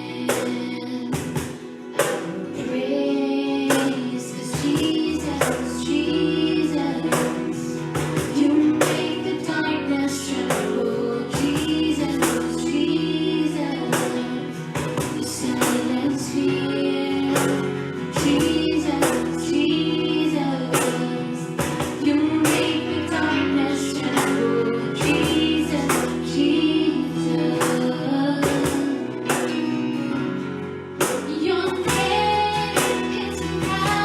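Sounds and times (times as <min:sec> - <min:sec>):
woman singing: 0:00.0 - 0:29.8, 0:31.0 - 0:34.0
band playing with drum beat: 0:00.3 - 0:02.7, 0:03.7 - 0:05.9, 0:07.1 - 0:09.4, 0:13.9 - 0:16.0, 0:17.3 - 0:19.5, 0:20.8 - 0:23.2, 0:24.2 - 0:26.3, 0:27.6 - 0:29.7, 0:31.0 - 0:34.0.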